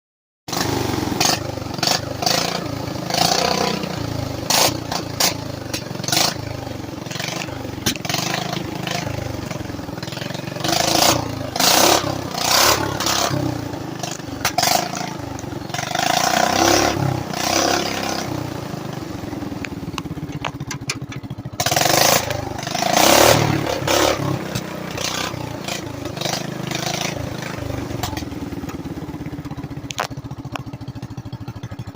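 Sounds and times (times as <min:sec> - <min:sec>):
small engine revving: 0:00.5 - 0:28.9
loud knocks and clattering: 0:20.2 - 0:21.4.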